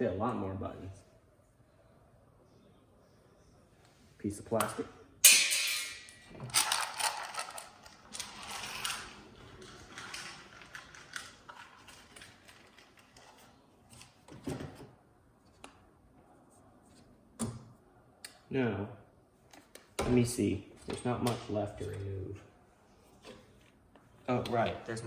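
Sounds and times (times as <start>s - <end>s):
plastic parts clicking and rattling: 6.4s - 14.1s.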